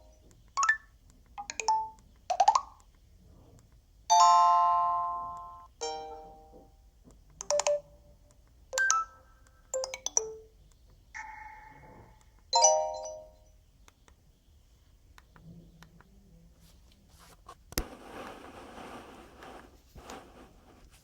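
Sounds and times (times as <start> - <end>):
phone ringtone chimes: 11.2 - 13.4.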